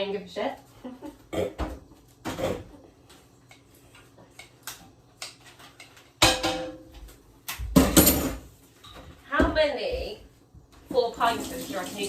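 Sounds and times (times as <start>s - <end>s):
kitchen utensils and dishes clicking: 3.5s - 9.1s.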